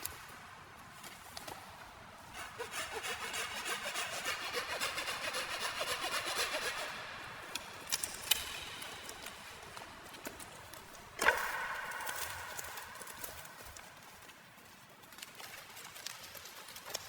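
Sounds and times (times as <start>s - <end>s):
hand saw cutting wood: 2.2s - 8.5s.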